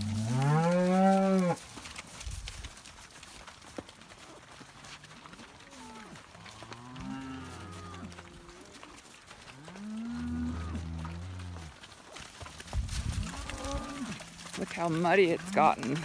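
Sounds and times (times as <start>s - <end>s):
cattle mooing: 0.0s - 1.6s, 5.7s - 8.8s, 9.6s - 11.8s, 13.1s - 16.0s.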